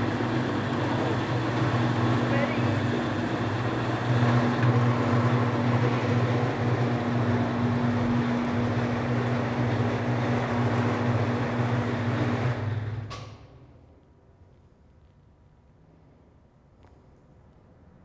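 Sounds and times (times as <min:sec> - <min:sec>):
wire stripping machine humming: 0:00.0 - 0:13.3.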